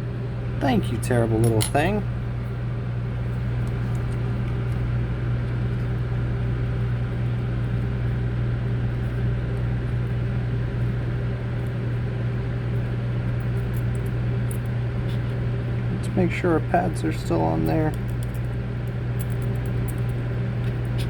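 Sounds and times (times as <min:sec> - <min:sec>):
motor or fan humming: 0:00.0 - 0:21.0.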